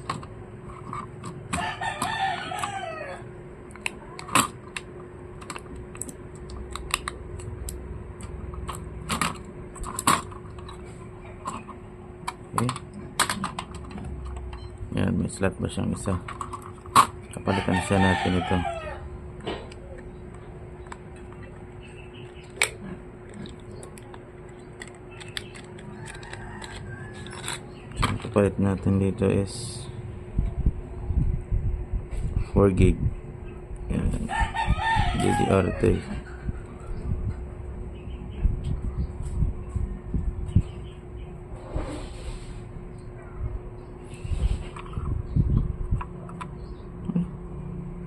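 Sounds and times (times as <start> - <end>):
faint steady hum: 0.0 - 48.0
rooster crowing: 1.5 - 3.3, 17.4 - 19.1, 25.9 - 27.5, 34.2 - 36.3
small handling ticks: 19.6 - 27.6
plastic and metal parts tapping: 23.4 - 28.4.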